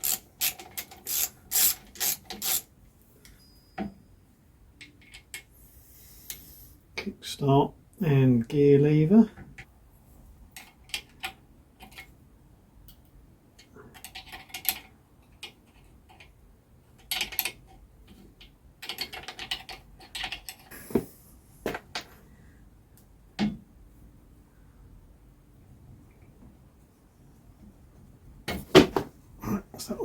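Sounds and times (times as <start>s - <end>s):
hand tools and metal parts clinking: 0.0s - 2.6s.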